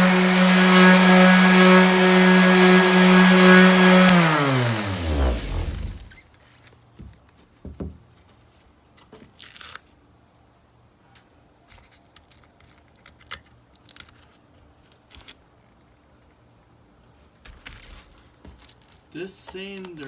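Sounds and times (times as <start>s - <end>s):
low thumps: 0.0s - 6.1s.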